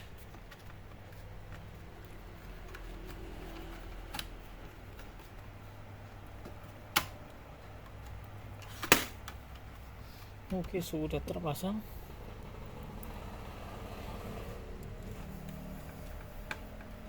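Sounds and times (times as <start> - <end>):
laptop parts snapping into place: 6.4 - 7.2, 8.7 - 9.4.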